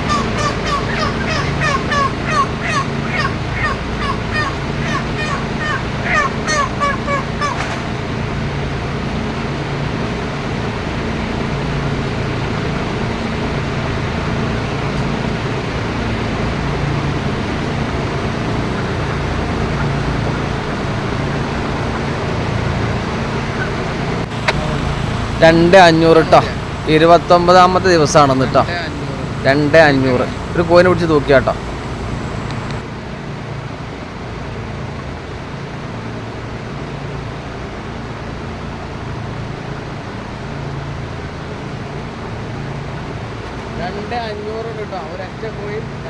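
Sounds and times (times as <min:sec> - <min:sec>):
chickens peeping: 0:00.0 - 0:08.0, 0:18.0 - 0:32.8
steady low hum: 0:00.0 - 0:32.9
ventilation fans running: 0:00.0 - 0:46.0.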